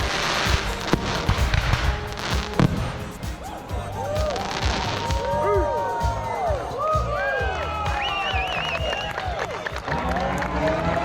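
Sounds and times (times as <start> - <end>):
high wavering whistle: 0.0 - 9.7
fireworks crackling and bursting: 0.0 - 10.6
music playing: 0.0 - 11.0.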